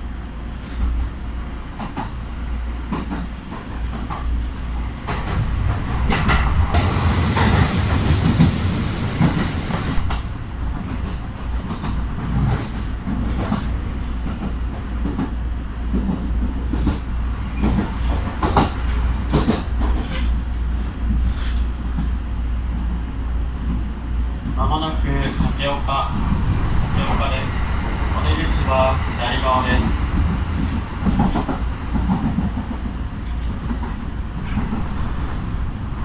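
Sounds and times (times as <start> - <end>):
train rumbling: 0.0 - 36.0
hiss: 6.8 - 10.0.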